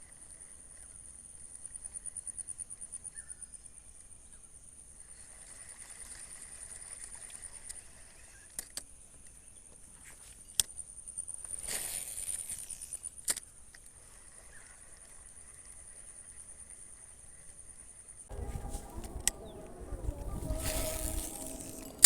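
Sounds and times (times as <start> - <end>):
insect trilling: 18.3 - 22.0.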